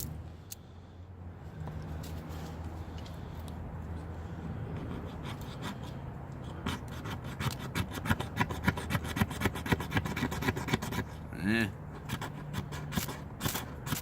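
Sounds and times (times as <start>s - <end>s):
file rasping on ferro rod: 4.7s - 11.2s, 11.9s - 14.0s.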